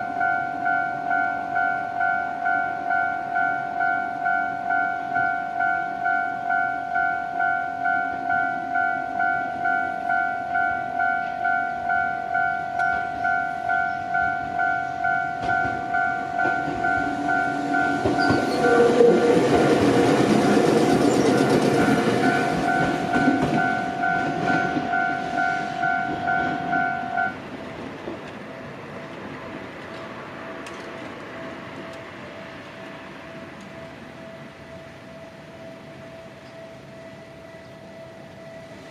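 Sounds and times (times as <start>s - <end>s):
level-crossing warning bell: 0.0s - 38.9s
train wheels clattering on rails: 12.8s - 32.1s.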